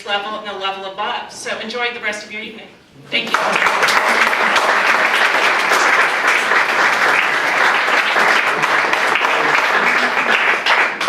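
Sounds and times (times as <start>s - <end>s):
audience applauding: 3.2s - 11.0s.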